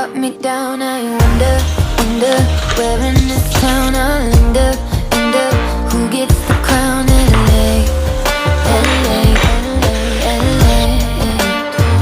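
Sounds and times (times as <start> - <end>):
pop music with steady beat: 0.0 - 12.0.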